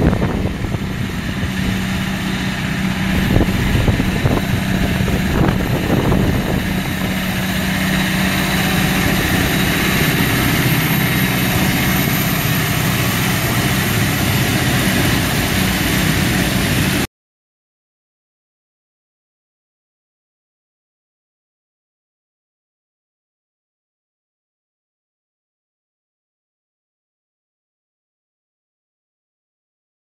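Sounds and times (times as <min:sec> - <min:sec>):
tractor diesel engine running: 0:00.0 - 0:17.1.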